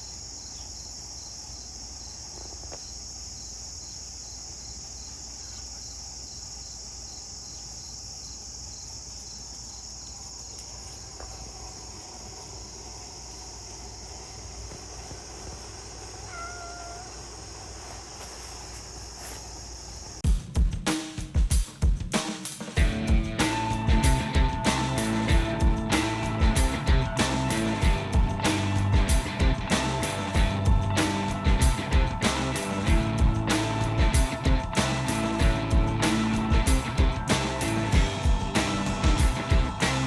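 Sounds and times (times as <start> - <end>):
insects chirping: 0.0 - 21.3, 22.4 - 40.0
cat meowing: 16.2 - 17.3.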